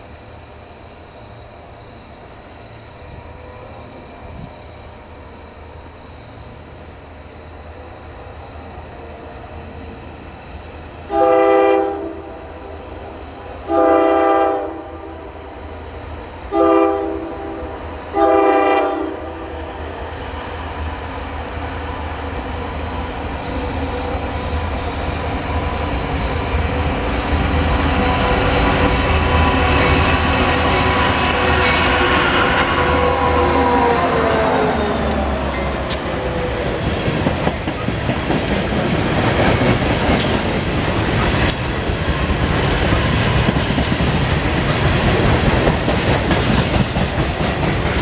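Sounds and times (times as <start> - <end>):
train hiss: 0.0 - 48.0
train rumble: 0.0 - 48.0
locomotive air horn blasts: 11.1 - 12.3, 13.7 - 15.1, 16.5 - 19.5, 27.9 - 34.8
metallic wheel squeal: 29.8 - 36.9.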